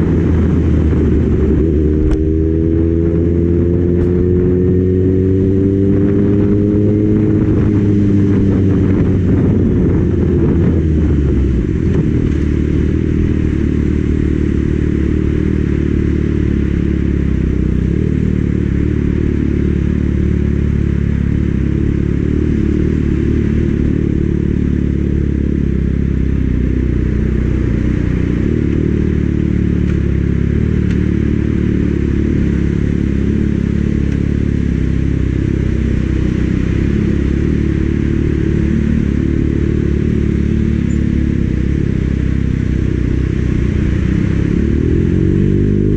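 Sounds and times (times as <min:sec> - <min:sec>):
wind rushing over microphone: 0:00.0 - 0:15.9
motorcycle engine running: 0:00.0 - 0:45.9.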